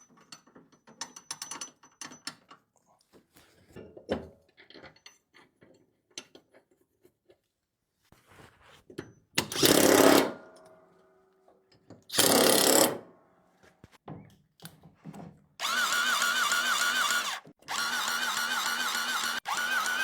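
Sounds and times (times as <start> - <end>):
power tool warbling whine: 15.6 - 20.0.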